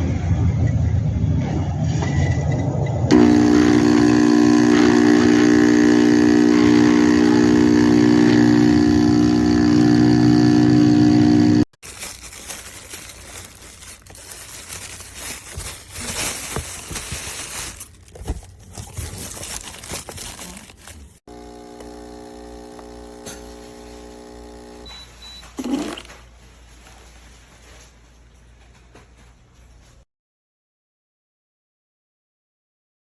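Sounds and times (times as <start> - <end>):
short high beep: 24.8 - 25.5.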